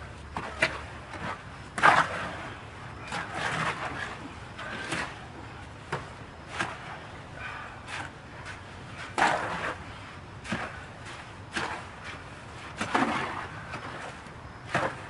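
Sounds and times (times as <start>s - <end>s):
shovel scraping into dirt: 0.4s - 5.2s, 8.9s - 15.0s.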